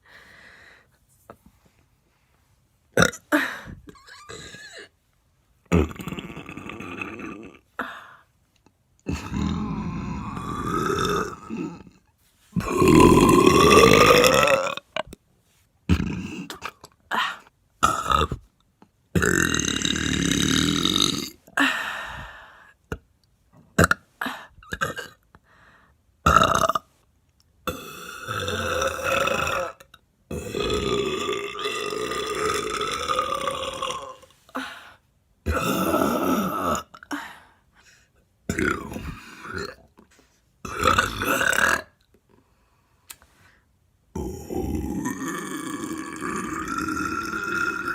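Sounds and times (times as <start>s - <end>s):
woman belching: 3.0s - 4.9s, 5.7s - 7.6s, 12.6s - 15.0s, 15.9s - 18.4s, 27.7s - 34.2s, 35.5s - 37.0s, 38.5s - 39.9s, 40.7s - 42.0s, 44.2s - 47.9s.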